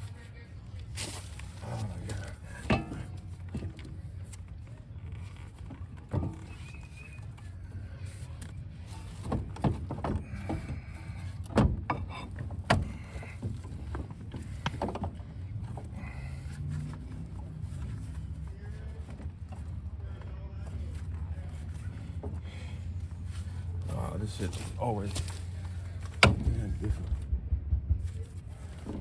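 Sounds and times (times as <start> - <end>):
metal knocks and clanks: 2.2 - 3.9, 9.2 - 15.9, 26.1 - 29.0
short squeaks: 5.0 - 9.1
steady low rumble: 17.2 - 29.0.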